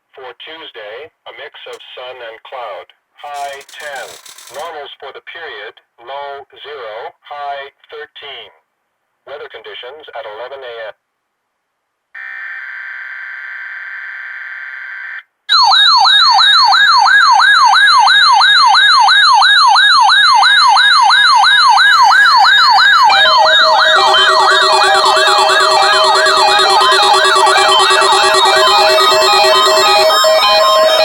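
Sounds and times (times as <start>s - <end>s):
buzzing digital data: 3.3s - 4.7s, 22.0s - 31.0s
warbling siren-like alarm: 3.3s - 4.7s, 15.5s - 31.0s
steady tones: 21.8s - 31.0s.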